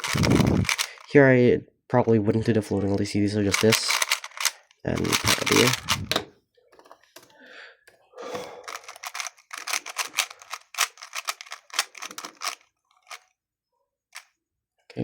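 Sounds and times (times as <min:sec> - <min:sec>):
plastic puzzle cube clacking turns: 0:00.0 - 0:01.1, 0:02.8 - 0:06.3, 0:08.6 - 0:13.3.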